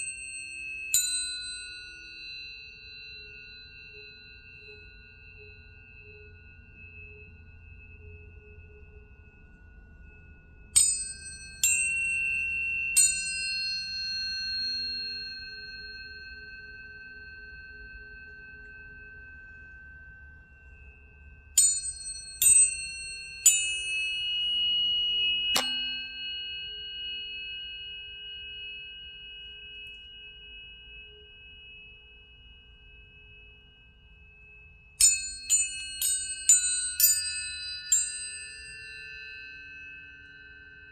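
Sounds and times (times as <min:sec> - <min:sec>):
ringing pure tones: 0:00.0 - 0:40.9
tuning fork metallic clink: 0:00.0 - 0:40.9.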